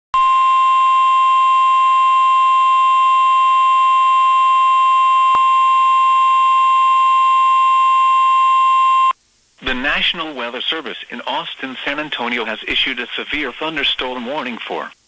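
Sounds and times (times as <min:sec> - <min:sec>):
loud steady pure alarm tone: 0:00.2 - 0:09.2.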